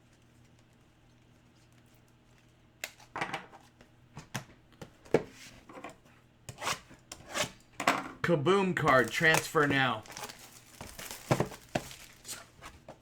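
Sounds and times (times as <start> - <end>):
cards and packaging clicking: 8.8 - 12.9.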